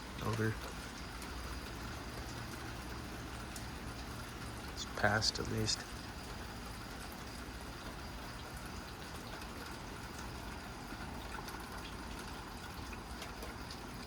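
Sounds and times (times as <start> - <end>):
steady rain: 0.0 - 14.0
water dripping: 0.0 - 14.0.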